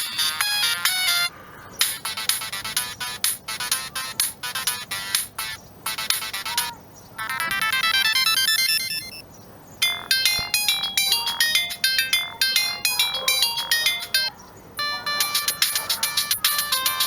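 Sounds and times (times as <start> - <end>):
fast high beeping notes: 0.0 - 9.2, 9.8 - 17.0
mobile phone ringtones: 0.0 - 17.0.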